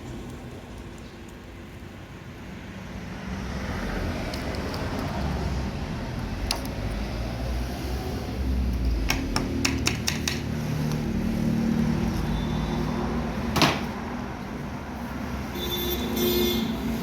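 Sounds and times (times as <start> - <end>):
metal clicks and taps: 4.3 - 5.3, 6.4 - 7.0, 8.7 - 11.1.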